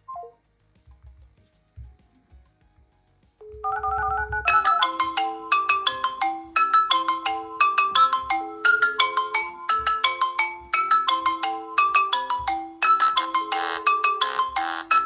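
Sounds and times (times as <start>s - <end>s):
mobile phone ringtone: 3.4s - 15.0s
fast marimba-like melody: 3.6s - 15.0s.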